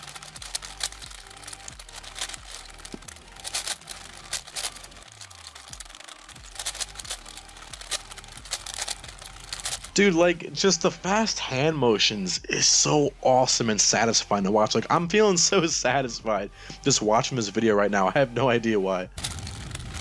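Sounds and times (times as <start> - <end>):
plastic puzzle cube clicking: 0.0 - 10.0
faint background music: 0.0 - 20.0.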